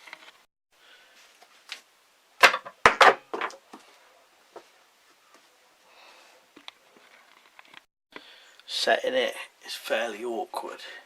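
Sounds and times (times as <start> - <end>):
wooden sticks knocking: 2.4 - 3.8.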